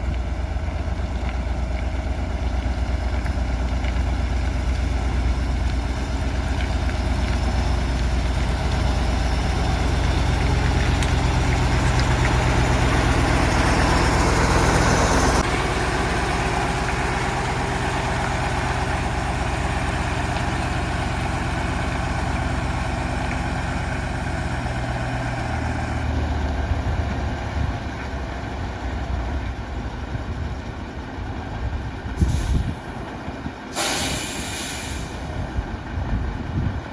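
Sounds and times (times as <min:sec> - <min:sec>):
truck diesel engine running: 0:00.0 - 0:36.9
air brake hisses: 0:32.2 - 0:32.9, 0:33.7 - 0:35.4.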